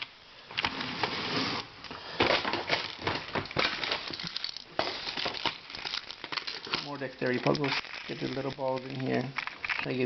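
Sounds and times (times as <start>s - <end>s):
puzzle pieces clicking and clattering: 2.4s - 10.0s.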